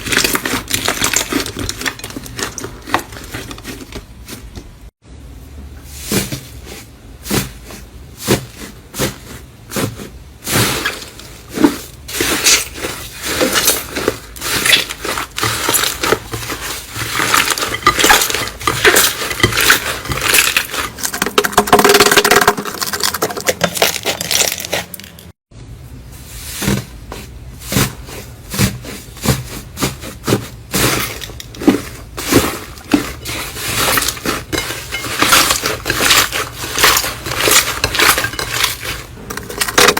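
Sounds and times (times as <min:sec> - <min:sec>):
sticky clicks and crackles: 0:00.0 - 0:04.7, 0:10.6 - 0:25.4, 0:30.2 - 0:39.9.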